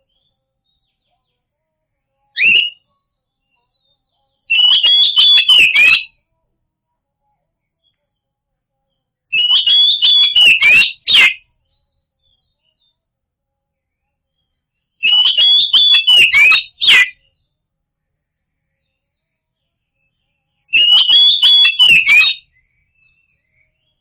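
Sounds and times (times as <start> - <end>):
bird song whistled notes: 2.4 - 6.1, 9.3 - 13.0, 13.9 - 17.5, 18.5 - 24.0.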